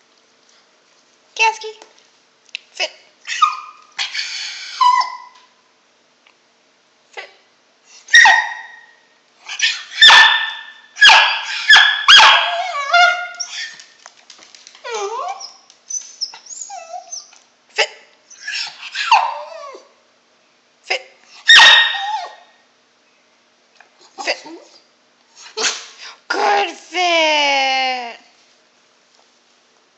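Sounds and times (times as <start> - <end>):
dog yipping: 3.2 - 5.5, 8.1 - 14.0, 14.8 - 17.4, 18.3 - 19.9, 21.4 - 22.5, 25.6 - 25.9
dog whining: 3.3 - 5.5, 8.1 - 10.3, 11.0 - 13.9, 14.8 - 17.5, 18.3 - 20.0, 21.5 - 22.5.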